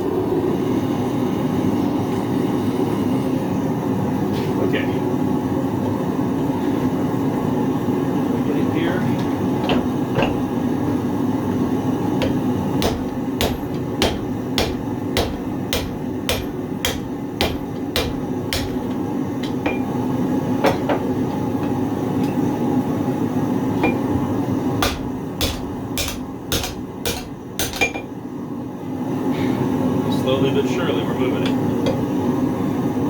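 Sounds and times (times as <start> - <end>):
hammer striking steel on anvil: 12.2 - 19.9, 24.8 - 28.1.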